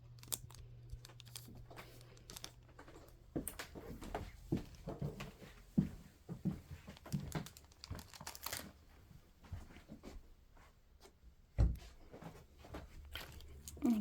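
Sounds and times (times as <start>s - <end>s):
packaging crinkling and rustling: 0.0s - 3.8s, 6.7s - 9.1s
packaging tearing: 0.2s - 2.5s, 7.1s - 8.7s.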